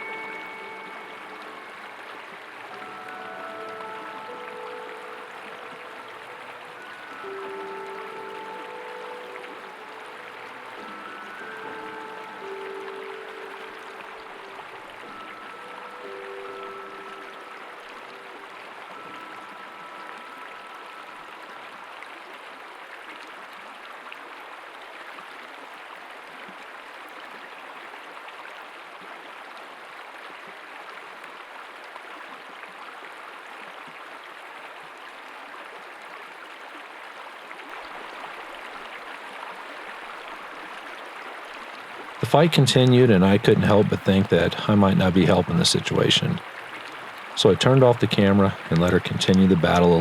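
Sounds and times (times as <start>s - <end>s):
held musical tones: 0.0s - 21.8s, 42.2s - 50.0s.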